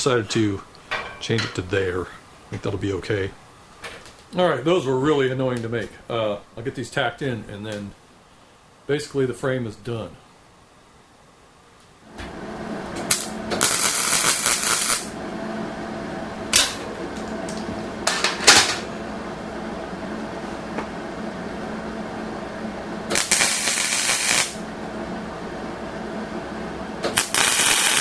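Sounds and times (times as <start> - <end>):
welding machine hum: 12.1 - 20.4, 21.0 - 25.2, 27.0 - 28.0
crackling welding arc: 13.0 - 15.2, 23.1 - 24.7, 27.0 - 28.0.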